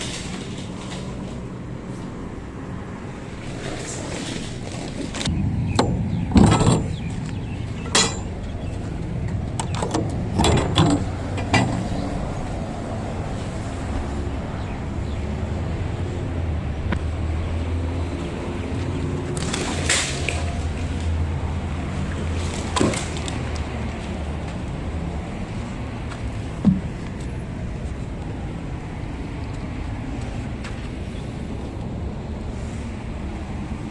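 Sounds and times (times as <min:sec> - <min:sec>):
refrigerator van rumbling: 0:00.0 - 0:33.9
sharp knocks and clunks: 0:05.7 - 0:08.6, 0:09.6 - 0:12.0, 0:26.6 - 0:27.0.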